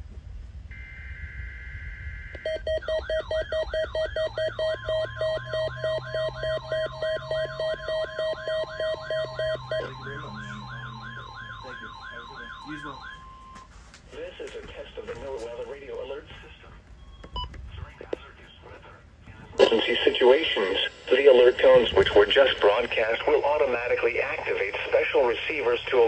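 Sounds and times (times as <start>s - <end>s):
two-tone digital warble: 0.7s - 13.2s
loud pulsing beep: 0.7s - 13.6s, 19.6s - 22.6s
steady warning tone: 0.7s - 13.7s, 19.6s - 24.9s
whooping siren sweep: 0.8s - 13.6s.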